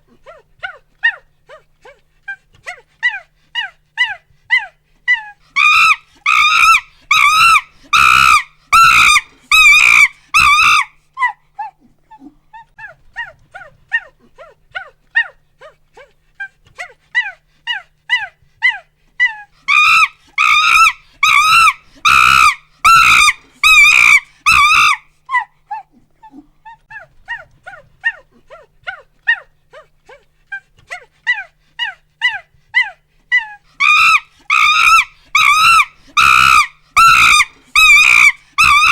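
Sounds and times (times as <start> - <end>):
monkey hooting and screaming: 3.1 - 11.4, 17.2 - 25.5, 31.3 - 38.9.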